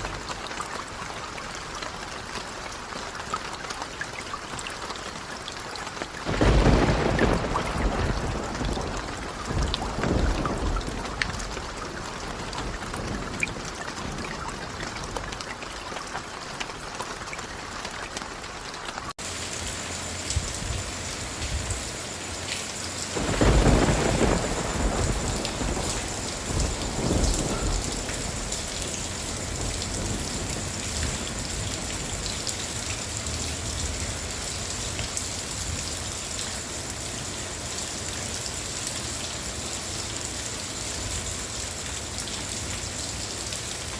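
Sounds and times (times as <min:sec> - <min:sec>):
steady rain: 0:00.0 - 0:43.9
thunder rumble: 0:06.3 - 0:15.3, 0:19.2 - 0:34.8.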